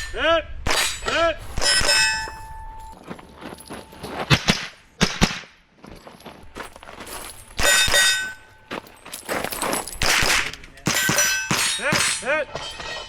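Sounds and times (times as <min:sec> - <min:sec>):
steel target plates ringing: 0:00.0 - 0:04.2, 0:07.2 - 0:13.0
rifle shots: 0:10.0 - 0:12.2.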